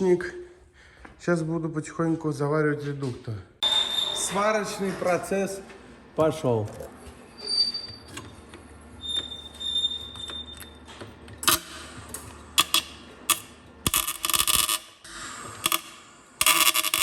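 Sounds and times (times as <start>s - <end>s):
arc welding crackling: 11.4s - 17.0s.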